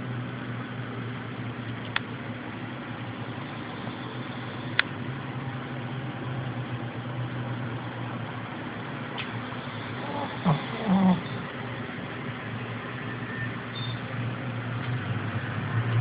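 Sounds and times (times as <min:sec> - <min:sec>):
pet snoring: 0:09.6 - 0:11.6.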